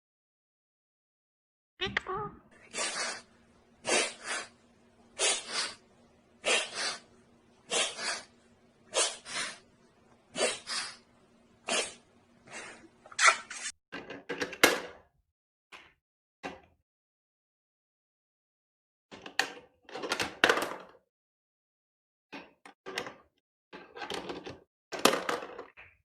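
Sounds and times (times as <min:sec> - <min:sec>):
bird hissing sounds: 0:02.6 - 0:04.6, 0:05.2 - 0:05.8, 0:06.4 - 0:08.3, 0:08.9 - 0:09.6, 0:10.3 - 0:13.7.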